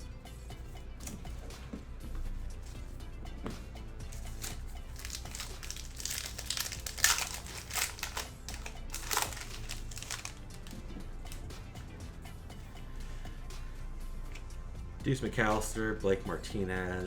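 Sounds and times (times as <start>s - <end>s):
foil wrapper tearing and crinkling: 4.2s - 10.8s.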